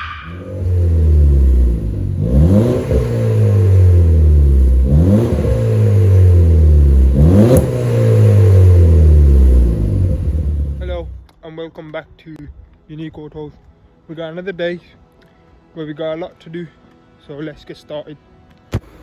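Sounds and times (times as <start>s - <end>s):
car engine revving: 0.0s - 11.2s.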